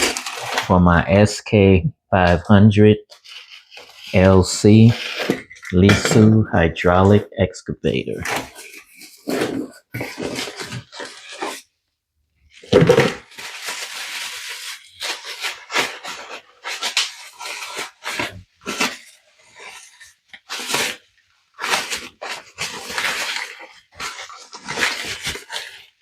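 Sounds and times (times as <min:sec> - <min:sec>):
packaging rustling and tearing: 0:00.0 - 0:00.7, 0:03.1 - 0:04.2, 0:04.8 - 0:06.2, 0:08.2 - 0:11.8, 0:12.5 - 0:26.0.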